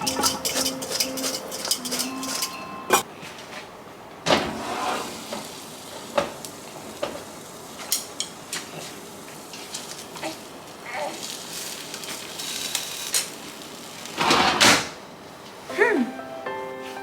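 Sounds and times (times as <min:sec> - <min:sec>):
food sizzling in a frying pan: 0:00.0 - 0:02.6, 0:05.1 - 0:14.2
utensils knocking and clinking: 0:00.0 - 0:03.0.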